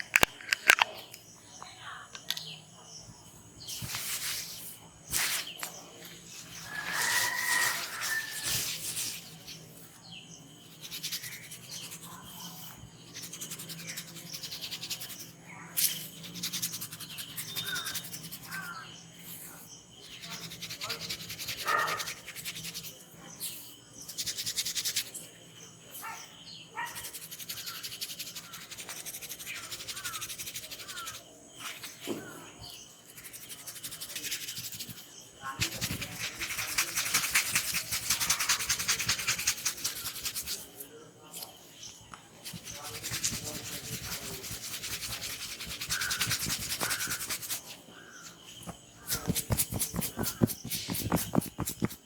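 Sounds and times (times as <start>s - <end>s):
bird chirps: 0.9s - 24.5s
hands rubbing head and hair: 3.6s - 9.7s, 27.0s - 41.5s, 42.4s - 52.0s.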